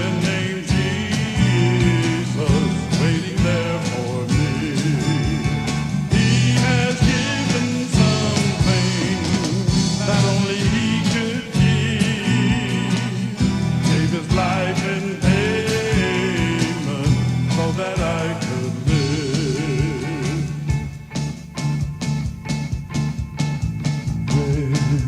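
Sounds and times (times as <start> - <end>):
bass: 0.0 - 25.0
lead melody line: 0.0 - 25.0
steady drum beat: 0.0 - 25.0.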